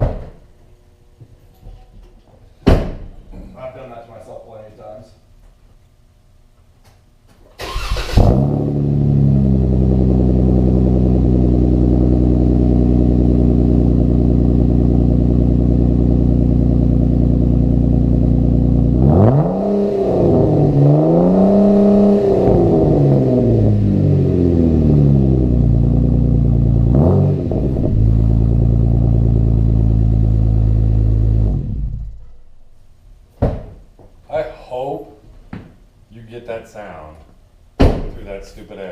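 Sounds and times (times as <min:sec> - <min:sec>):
engine revving: 0:07.6 - 0:32.2
car engine starting and idling: 0:07.6 - 0:33.0.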